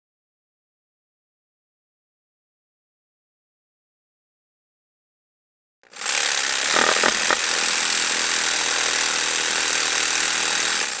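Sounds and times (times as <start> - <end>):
electric jigsaw whining: 5.9 - 11.0.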